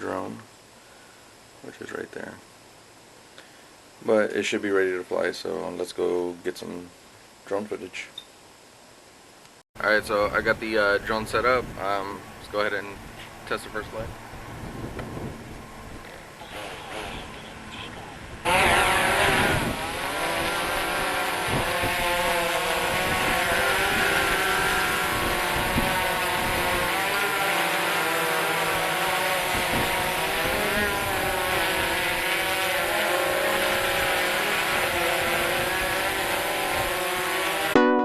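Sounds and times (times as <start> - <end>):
drone motors whining: 14.6 - 37.8.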